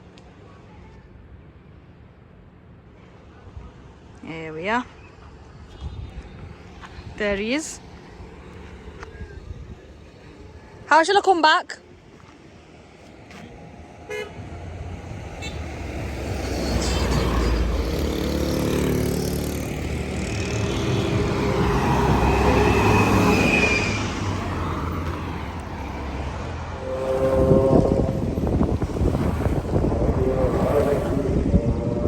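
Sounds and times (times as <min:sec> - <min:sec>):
vehicle engine rumbling: 0:05.8 - 0:11.1, 0:11.8 - 0:32.0
horn toot: 0:15.3 - 0:32.0.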